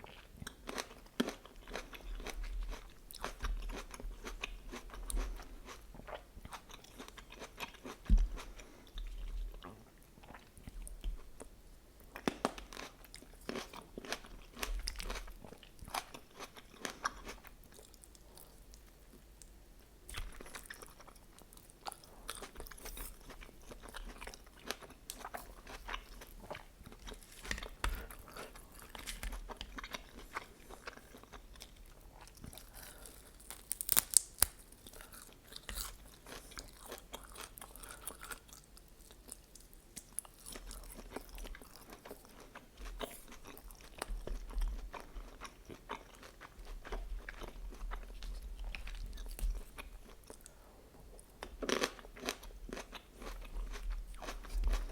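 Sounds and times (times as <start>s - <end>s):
person chewing food: 0.0s - 54.9s
food crunching: 20.1s - 54.9s.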